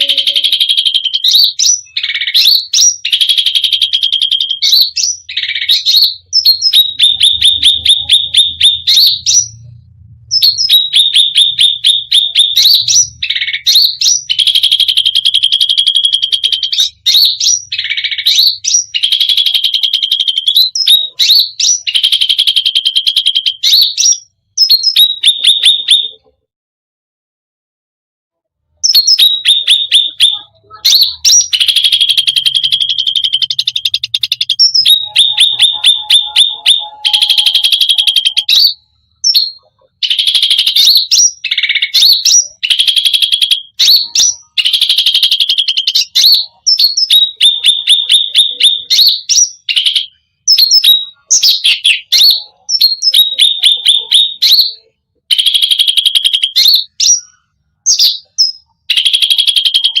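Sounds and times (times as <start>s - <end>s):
songbird chattering trills: 0.0s - 26.3s, 28.8s - 60.0s
bird whistled notes: 10.3s - 26.2s, 28.8s - 54.7s.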